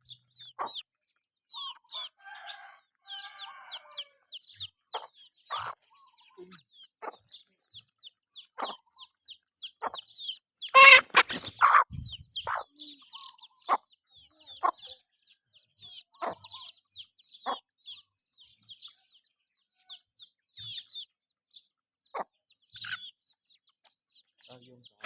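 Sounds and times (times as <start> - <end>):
chickens clucking: 0.0 - 0.9, 1.5 - 15.1, 15.8 - 18.9, 19.8 - 21.1, 22.2 - 23.2
chicks peeping: 0.0 - 25.0
chicken squawk: 10.7 - 12.7.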